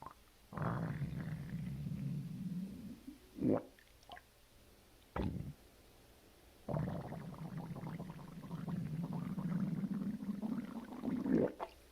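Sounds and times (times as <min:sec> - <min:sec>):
stomach growling and gurgling: 0:06.7 - 0:11.8.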